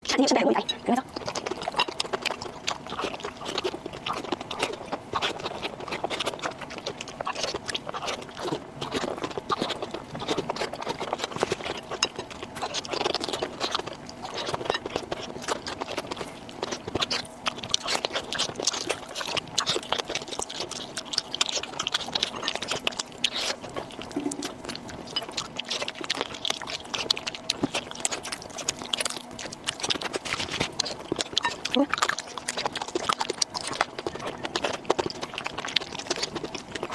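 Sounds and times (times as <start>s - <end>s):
person chewing: 0.1s - 36.9s.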